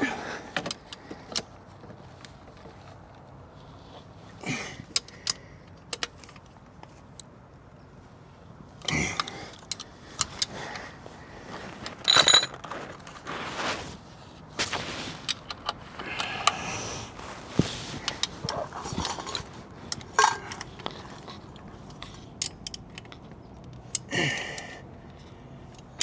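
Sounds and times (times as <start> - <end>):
clattering handling noises: 8.8 - 24.1
metal parts and tools clinking: 11.8 - 13.1, 18.0 - 23.3.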